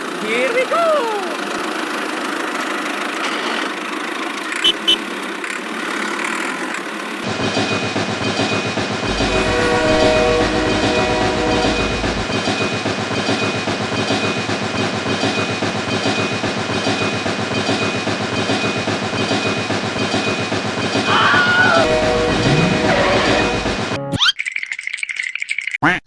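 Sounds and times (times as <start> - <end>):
train clatter on rails: 0.0 - 24.0
horn-like chord: 9.1 - 12.3, 21.9 - 23.7.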